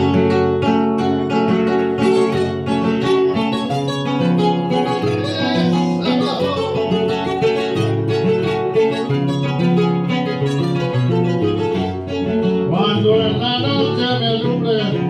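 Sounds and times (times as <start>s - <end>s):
acoustic guitar playing: 0.0s - 15.0s.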